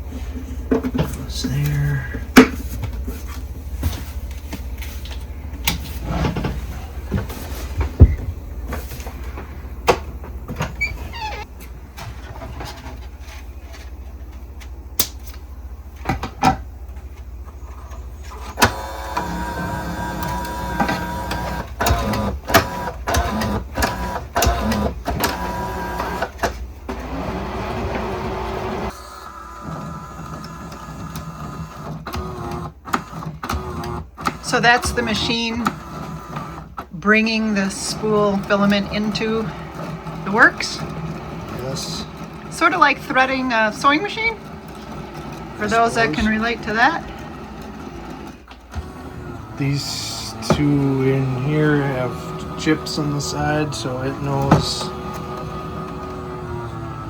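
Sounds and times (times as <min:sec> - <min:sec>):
steady low hum: 0:00.0 - 0:25.8
feeder motors running: 0:16.8 - 0:57.0.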